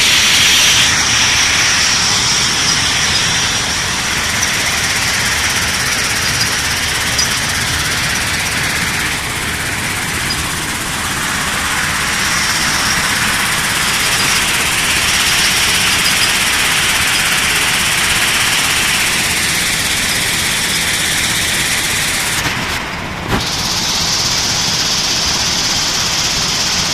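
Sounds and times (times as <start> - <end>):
machine running steadily: 0.0 - 26.9.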